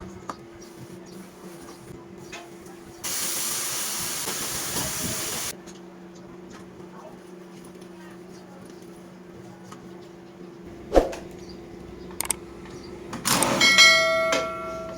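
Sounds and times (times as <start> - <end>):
sprayer jet hissing: 3.0 - 5.5.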